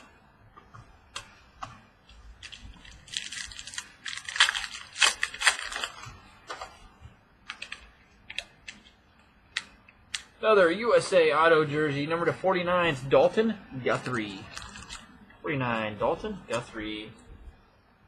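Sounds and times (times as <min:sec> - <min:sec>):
cards rustling and sliding: 0:00.6 - 0:06.9, 0:07.5 - 0:10.3.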